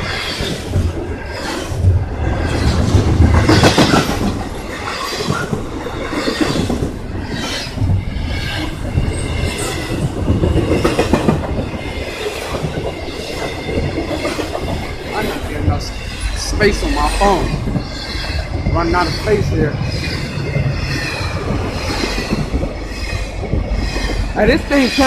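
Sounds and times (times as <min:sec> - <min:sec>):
train rumble: 0:00.0 - 0:25.0
train wheels clacking over rail joints: 0:00.0 - 0:25.0.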